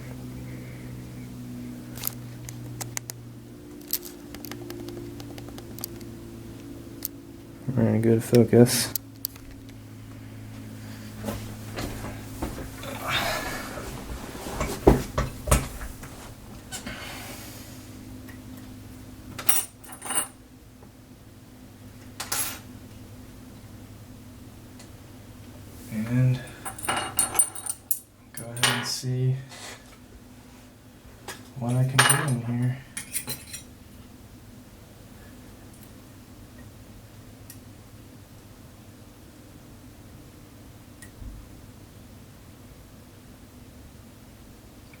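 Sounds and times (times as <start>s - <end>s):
low electrical hum: 0.0s - 45.0s
metal tools clinking: 26.5s - 28.9s, 31.7s - 33.7s.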